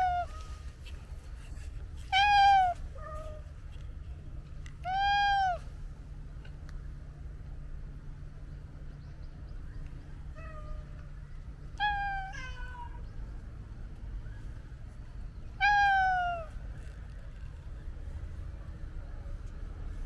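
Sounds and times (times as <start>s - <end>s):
cat meowing: 2.1s - 3.4s, 4.8s - 5.6s, 11.8s - 13.0s, 15.6s - 16.5s.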